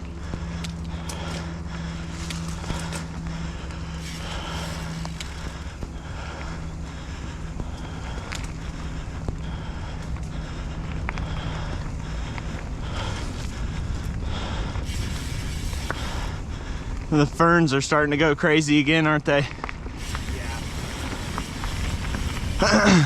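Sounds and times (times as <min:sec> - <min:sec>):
bike clicks and rattles: 0:00.0 - 0:17.9, 0:18.5 - 0:23.0
low hum: 0:00.0 - 0:23.0
tyres rumbling on dirt: 0:00.0 - 0:23.0
wind noise on microphone: 0:08.6 - 0:17.5, 0:19.8 - 0:23.0.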